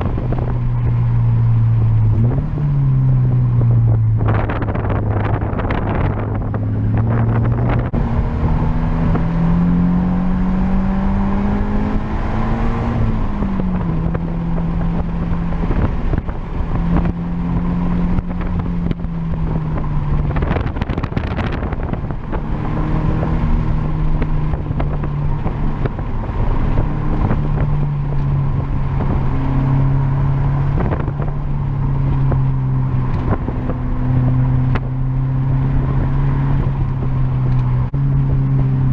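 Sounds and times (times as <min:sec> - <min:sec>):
car engine accelerating: 0:00.0 - 0:38.9
wind on microphone: 0:00.0 - 0:38.9.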